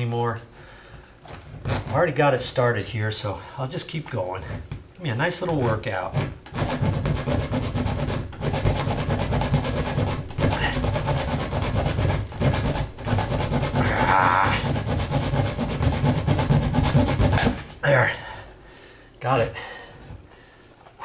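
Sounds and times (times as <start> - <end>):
hacksaw sawing through metal: 1.3 - 2.6, 5.3 - 17.8.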